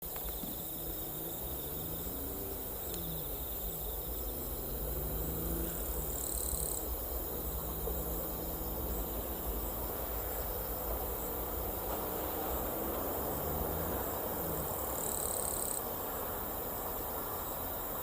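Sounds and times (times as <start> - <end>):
insects chirping: 0.0 - 18.0.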